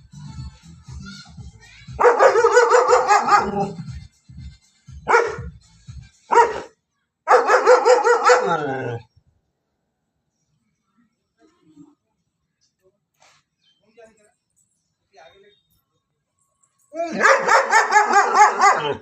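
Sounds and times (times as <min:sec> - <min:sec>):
dog barking loudly: 0:02.0 - 0:03.8, 0:05.1 - 0:05.6, 0:06.3 - 0:06.7, 0:07.3 - 0:09.0, 0:17.0 - 0:19.0.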